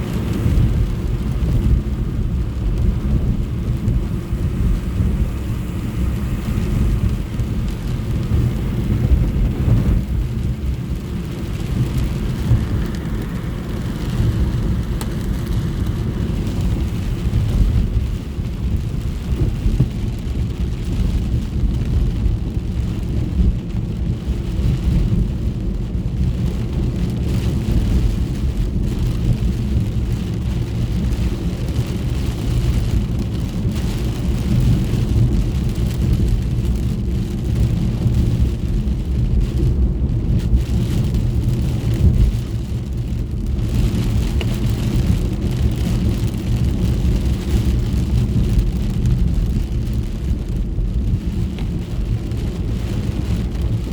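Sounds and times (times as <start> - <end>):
hiss of wet road: 0.0 - 21.2
rain on a car: 0.0 - 53.9
tyres and engine rumble: 0.0 - 53.9.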